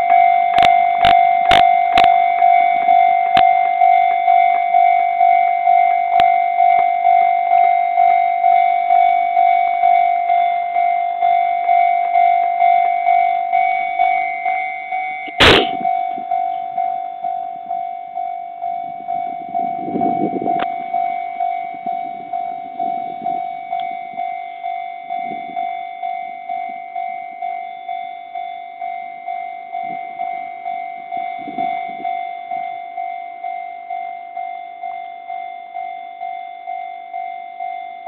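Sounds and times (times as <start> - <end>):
level-crossing warning bell ringing: 0.0 - 38.0
sharp knock: 15.4 - 15.9.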